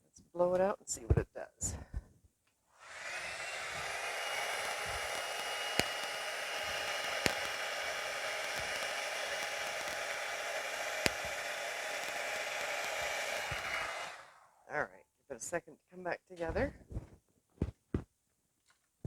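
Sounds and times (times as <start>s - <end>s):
hair dryer blowing: 2.8s - 14.6s
sharp clicks: 3.8s - 14.1s.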